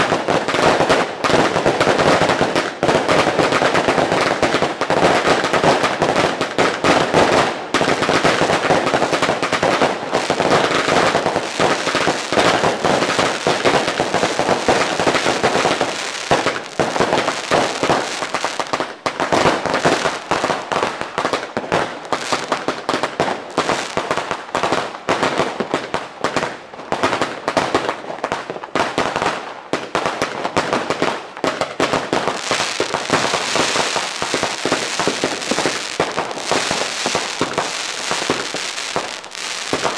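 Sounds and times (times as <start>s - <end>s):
firecrackers crackling: 0.0s - 25.6s, 30.0s - 39.9s.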